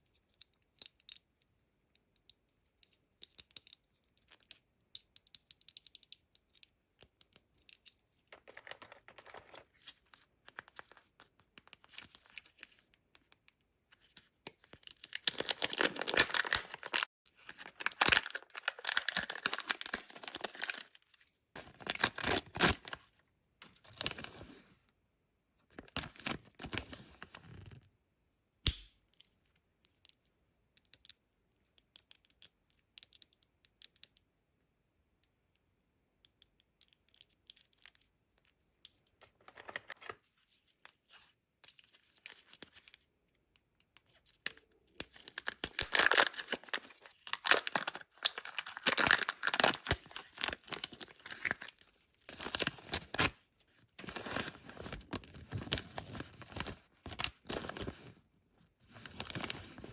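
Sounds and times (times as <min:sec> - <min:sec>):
packaging crinkling: 0:15.1 - 0:21.0, 0:21.6 - 0:23.0, 0:45.2 - 0:53.3.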